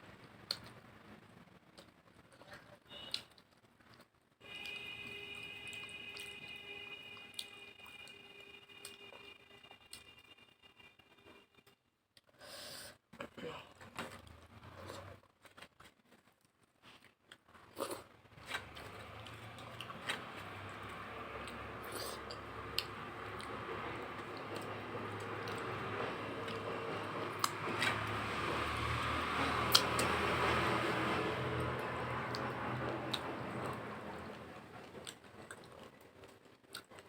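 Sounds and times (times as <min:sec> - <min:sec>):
soft chewing and mouth clicks: 0:00.2 - 0:00.8, 0:01.6 - 0:04.8, 0:13.9 - 0:23.5, 0:32.3 - 0:37.0.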